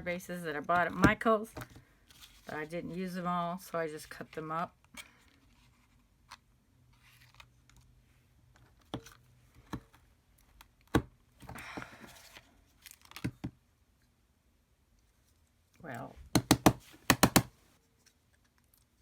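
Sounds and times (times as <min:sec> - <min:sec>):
craft tools clicking and tapping: 0:16.3 - 0:17.5.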